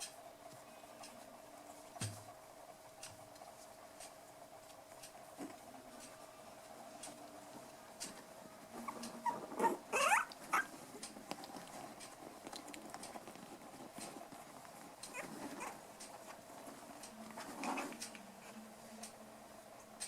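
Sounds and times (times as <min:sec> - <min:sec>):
puppies squealing and yipping: 0:08.8 - 0:10.7, 0:15.1 - 0:15.8.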